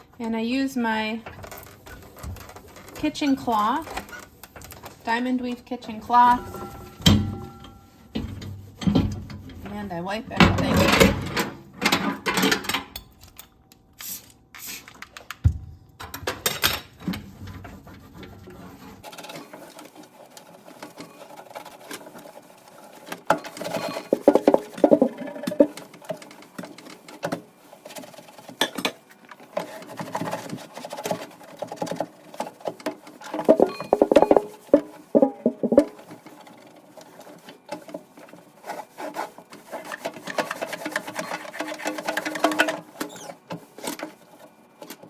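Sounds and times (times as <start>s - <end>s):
cloth scrubbing inside microwave: 23.7s - 25.8s, 33.0s - 43.0s.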